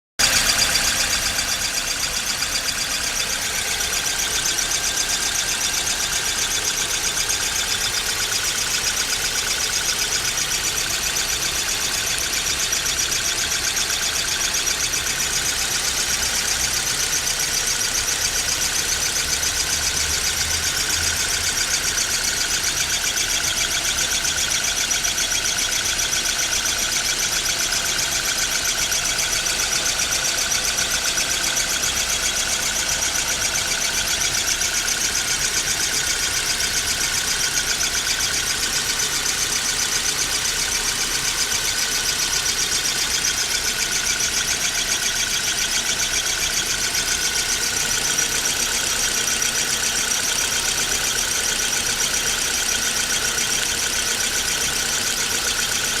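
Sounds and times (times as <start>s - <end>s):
high-pitched squeaking under hood: 0.2s - 26.0s
car engine idling: 0.2s - 56.0s.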